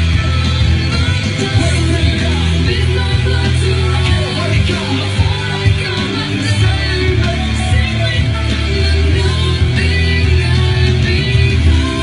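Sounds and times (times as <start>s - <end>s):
heavy bass: 0.0s - 12.0s
song with guitar and singing: 0.0s - 12.0s.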